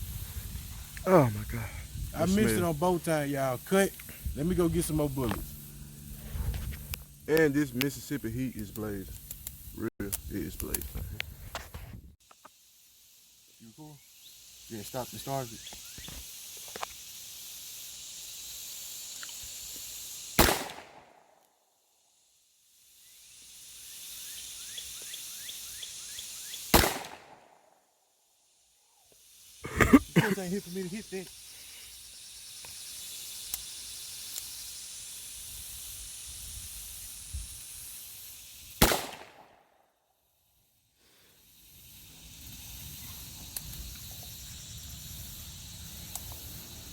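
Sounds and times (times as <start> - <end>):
insects chirring: 0.0 - 46.9
steady high hiss: 0.0 - 46.9
gunshot: 20.4 - 21.2, 26.7 - 27.5, 38.8 - 39.6.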